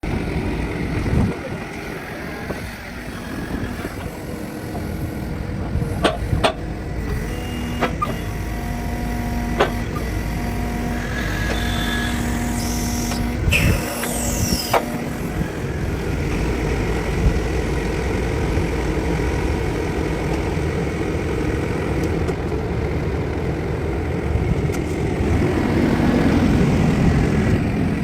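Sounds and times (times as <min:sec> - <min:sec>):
diesel engine low rumble: 0:00.0 - 0:28.0
steady hum: 0:00.0 - 0:28.0
sharp engine knocks: 0:05.9 - 0:07.2, 0:09.5 - 0:10.1.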